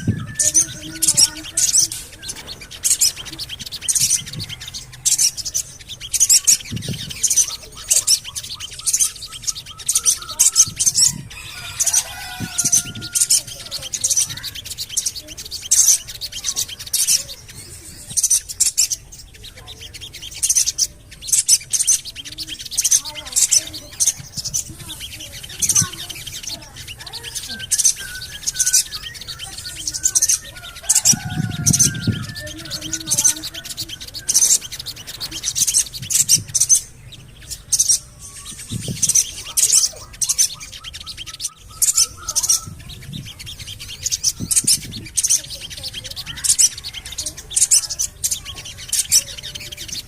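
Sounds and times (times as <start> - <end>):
bird chirping sharply: 0.0 - 50.0.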